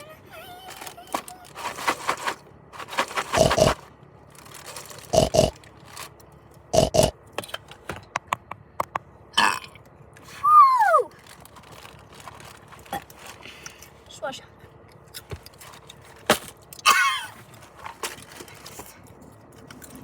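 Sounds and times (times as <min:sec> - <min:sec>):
crunchy snacks being chewed: 0:00.7 - 0:07.1.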